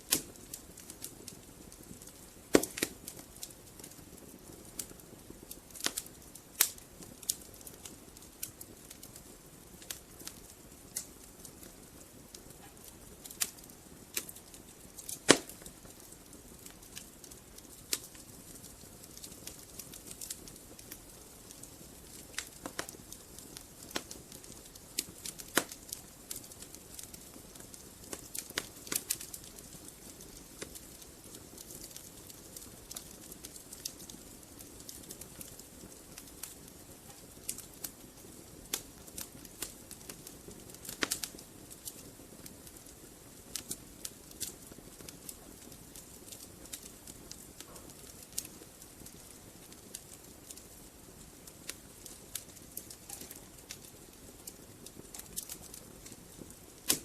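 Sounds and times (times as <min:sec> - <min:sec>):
logs crackling and popping: 0:00.0 - 0:57.0
soft fire hiss: 0:00.0 - 0:57.0.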